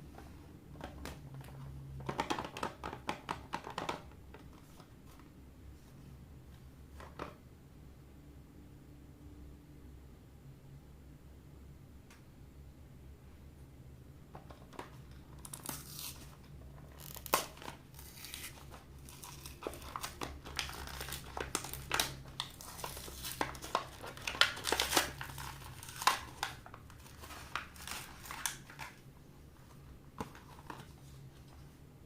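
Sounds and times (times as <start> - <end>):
packaging crinkling and tearing: 14.7 - 29.0.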